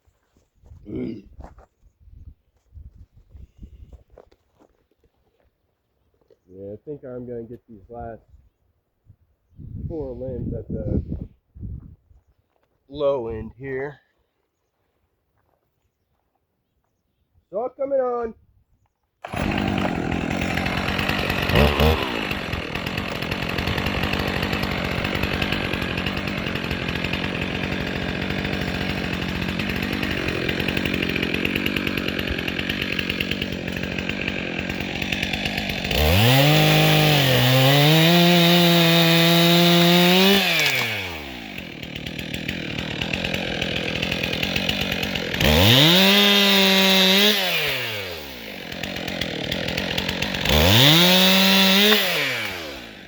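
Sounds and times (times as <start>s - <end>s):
chainsaw cutting at full throttle: 19.2s - 53.0s
chainsaw idling: 19.2s - 53.0s.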